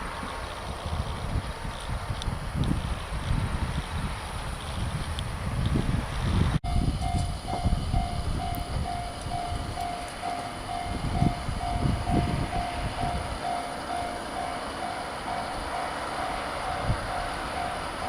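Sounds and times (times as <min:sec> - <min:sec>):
level crossing bell ringing: 0:06.7 - 0:17.8.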